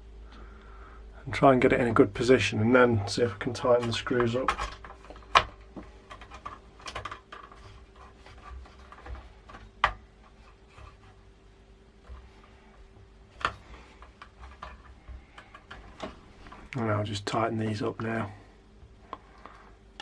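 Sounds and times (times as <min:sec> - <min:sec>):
light clicks and scraping: 0:02.8 - 0:11.2, 0:12.0 - 0:19.7.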